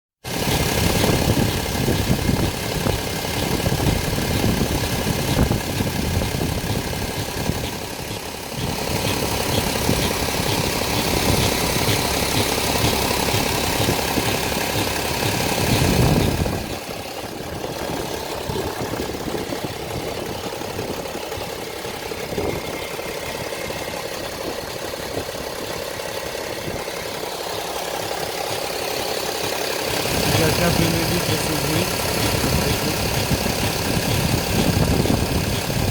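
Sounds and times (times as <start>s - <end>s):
diesel engine idling: 0.2s - 35.9s.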